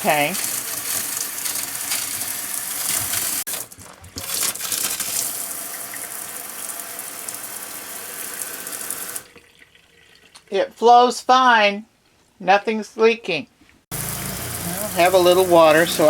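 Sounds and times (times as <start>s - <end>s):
faucet water spitting and sputtering: 0.0s - 10.5s, 13.9s - 16.0s.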